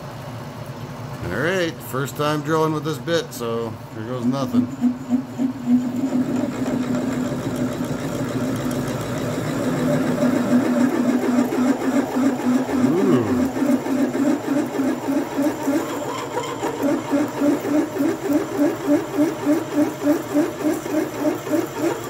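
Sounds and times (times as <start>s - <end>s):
metal lathe humming: 3.8s - 22.0s
drill bit cutting steel: 4.3s - 22.0s.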